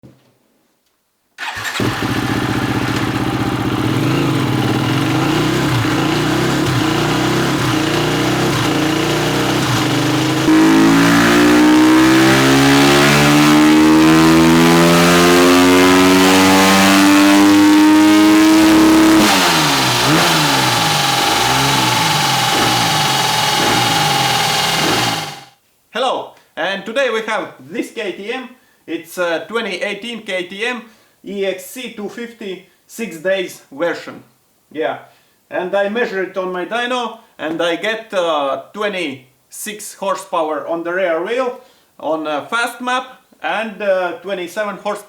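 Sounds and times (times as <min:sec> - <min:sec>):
motorcycle engine revving: 0:01.4 - 0:25.5.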